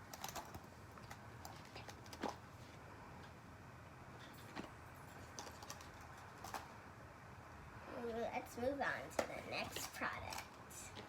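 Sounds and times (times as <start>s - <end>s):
small items clicking and tapping: 0.0s - 2.4s, 4.5s - 6.8s.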